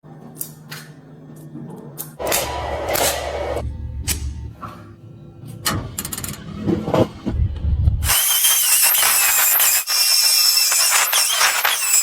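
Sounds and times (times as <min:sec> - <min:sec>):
loud rushing noise: 0:02.2 - 0:04.9
background music with steady bass: 0:02.3 - 0:08.1.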